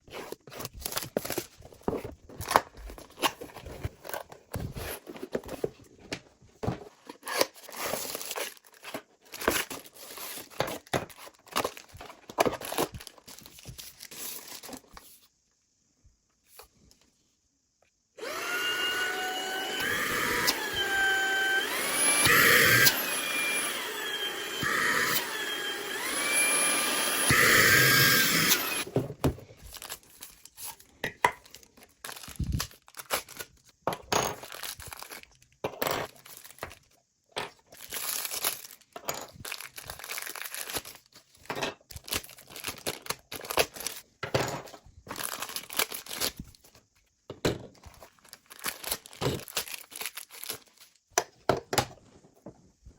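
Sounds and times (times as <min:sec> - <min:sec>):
plastic packaging crinkling: 0:06.9 - 0:15.0, 0:29.4 - 0:33.8, 0:34.4 - 0:37.0, 0:37.7 - 0:44.1, 0:45.1 - 0:46.8, 0:47.8 - 0:51.0
handheld vacuum running: 0:18.2 - 0:29.0.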